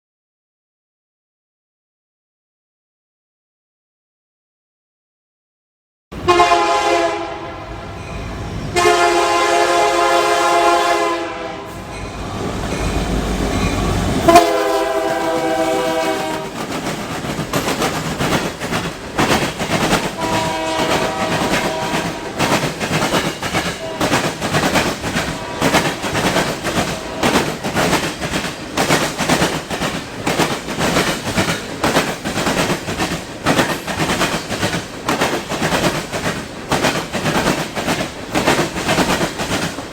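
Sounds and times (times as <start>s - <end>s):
locomotive air horn blasts: 6.2s - 8.0s, 8.7s - 11.9s, 14.2s - 16.6s, 20.2s - 22.4s, 23.7s - 24.2s, 25.2s - 26.0s, 26.8s - 27.4s
train wheels clacking over rails: 11.7s - 39.9s.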